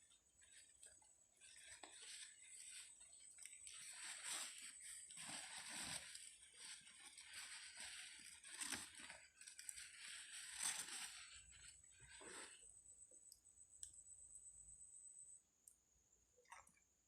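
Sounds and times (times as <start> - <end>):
packaging rustling and crinkling: 0.3 - 12.6.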